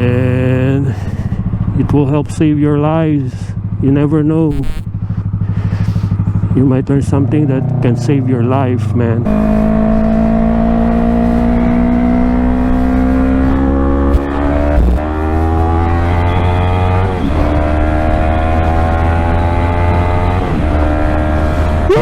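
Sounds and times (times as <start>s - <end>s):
motorcycle engine accelerating: 0.0s - 22.0s
wind noise on microphone: 12.7s - 15.9s.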